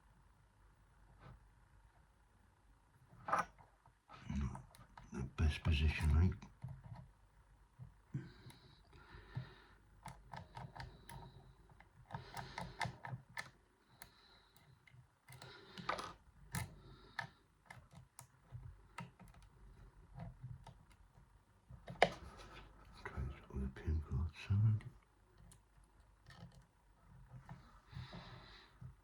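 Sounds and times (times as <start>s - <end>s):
lock pick clicking and scraping: 10.0s - 19.5s.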